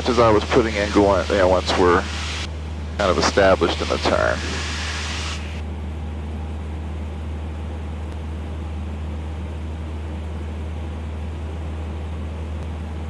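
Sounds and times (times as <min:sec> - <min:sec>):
high hiss: 0:00.0 - 0:05.6
small plane engine droning: 0:00.0 - 0:13.0.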